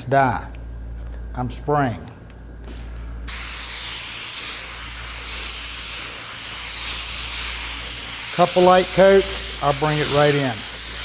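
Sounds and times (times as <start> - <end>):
spray gun hissing: 3.3 - 11.0.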